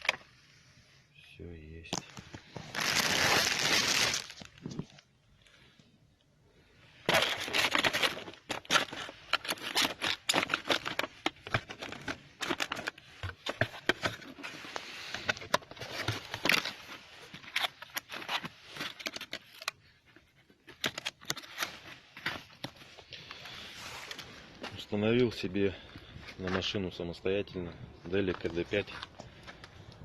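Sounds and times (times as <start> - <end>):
packaging rustling and clicking: 2.0 - 4.9, 7.1 - 23.1.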